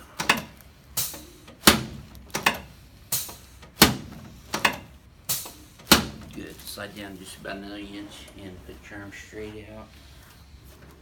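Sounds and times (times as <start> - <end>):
sharp knocks: 0.2 - 6.4.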